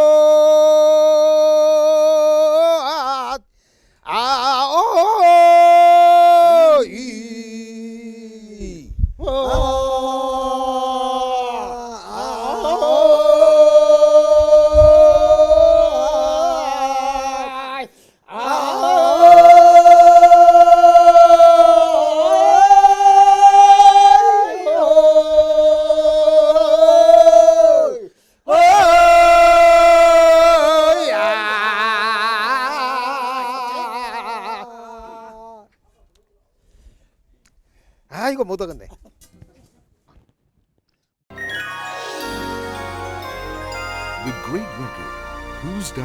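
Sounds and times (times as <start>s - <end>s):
person singing folk song: 0.0s - 35.3s
singer breathing: 3.5s - 4.1s, 17.9s - 18.3s, 28.1s - 28.5s, 36.6s - 38.1s.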